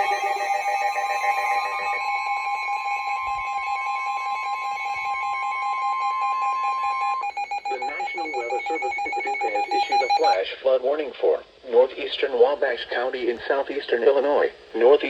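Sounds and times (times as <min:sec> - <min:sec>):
lower steady tone: 0:00.0 - 0:10.4
piercing alarm tone: 0:00.0 - 0:10.4.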